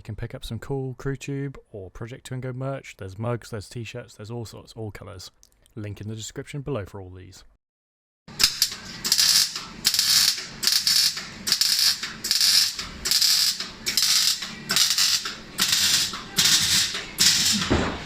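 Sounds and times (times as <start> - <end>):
ratchet wrench clicking: 8.4 - 17.6.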